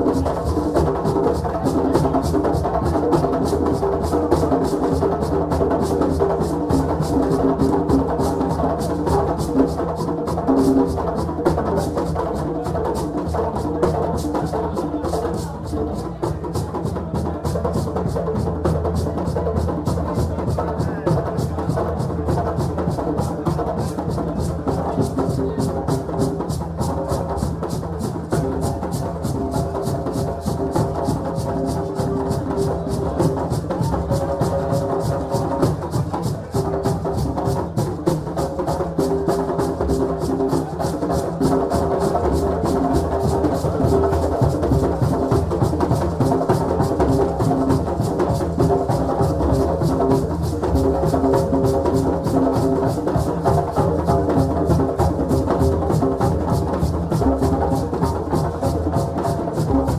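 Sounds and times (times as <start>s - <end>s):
fast drumming: 0.0s - 59.9s.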